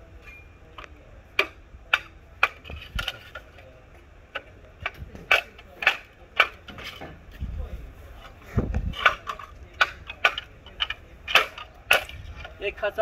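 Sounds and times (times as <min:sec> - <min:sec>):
bamboo splitting with cracks: 0:08.9 - 0:12.2.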